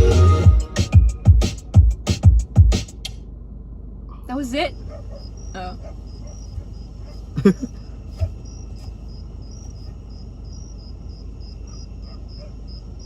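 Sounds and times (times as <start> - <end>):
low steady rumble: 0.0 - 13.0
cricket chirping: 4.1 - 13.0.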